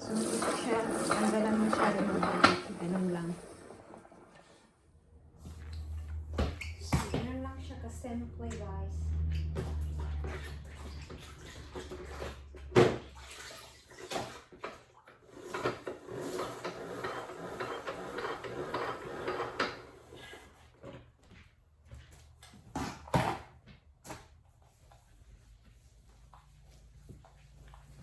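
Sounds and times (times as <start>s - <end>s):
water swishing and sloshing: 0.0s - 7.8s, 9.0s - 17.0s.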